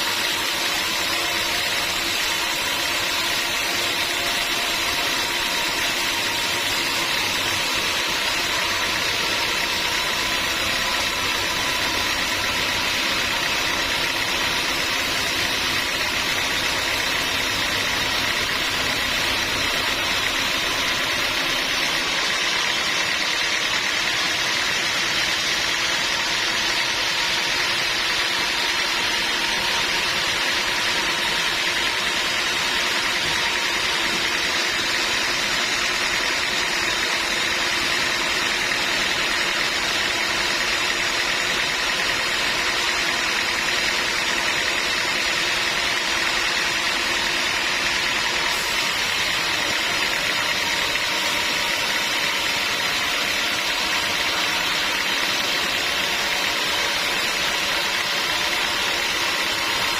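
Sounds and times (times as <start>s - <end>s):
sawmill machinery drone: 0.0s - 59.9s.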